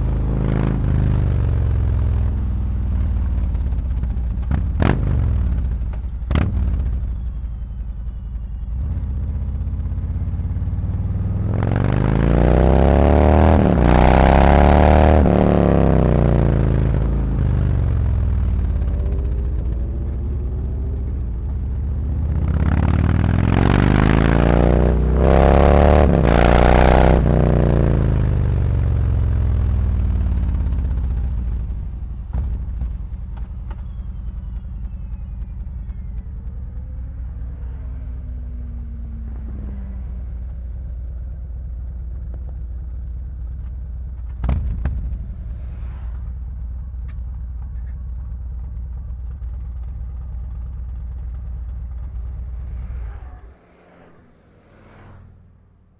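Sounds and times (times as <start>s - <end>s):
motorcycle engine accelerating: 0.0s - 55.9s
motorcycle idling: 1.2s - 11.5s, 16.5s - 23.3s, 28.4s - 53.6s.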